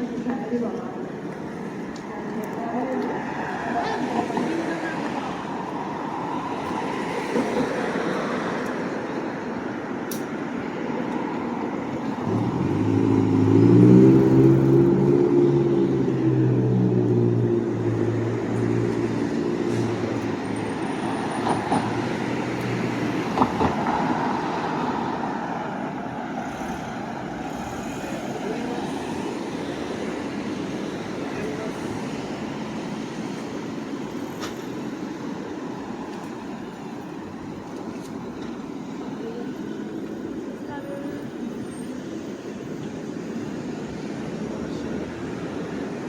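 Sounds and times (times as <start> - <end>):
street traffic noise: 0.0 - 46.0
vehicle engine passing close: 12.2 - 20.2.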